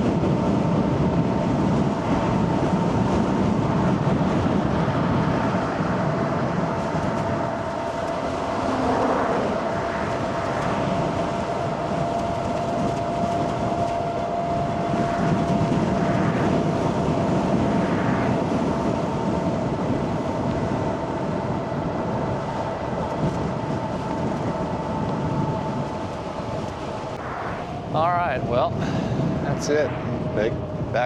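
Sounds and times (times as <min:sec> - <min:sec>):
thin electric motor whine: 0:00.0 - 0:31.0
wind and tyre noise: 0:00.0 - 0:31.0.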